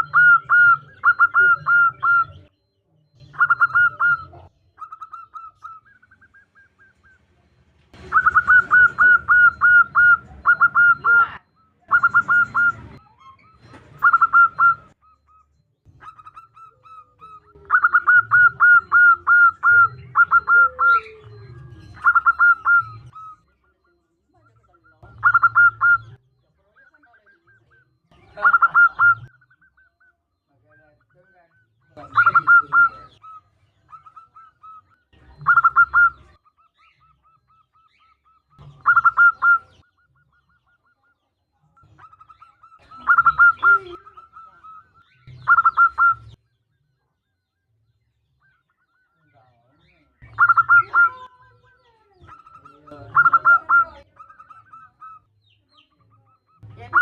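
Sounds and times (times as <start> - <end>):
dove cooing: 0.0 - 46.4, 48.4 - 57.0.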